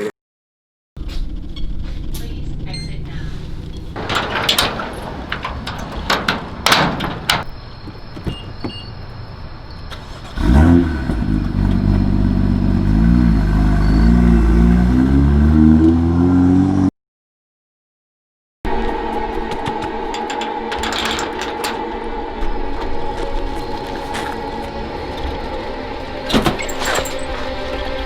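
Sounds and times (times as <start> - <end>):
street noise: 1.0 - 16.9, 18.7 - 28.0
vehicle engine revving: 9.9 - 16.9.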